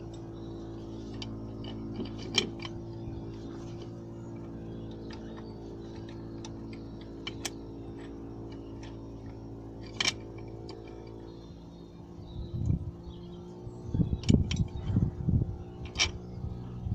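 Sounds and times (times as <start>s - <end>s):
steady low hum: 0.0s - 16.9s.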